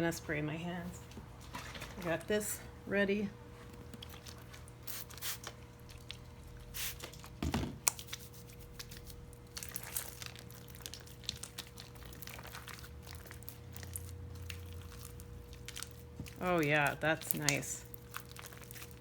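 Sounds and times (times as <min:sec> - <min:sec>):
slime crackling being kneaded: 0:07.8 - 0:19.0.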